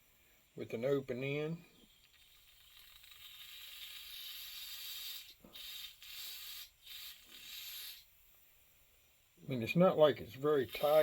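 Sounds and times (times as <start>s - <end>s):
aerosol spray hissing: 2.0s - 8.1s, 10.6s - 11.0s.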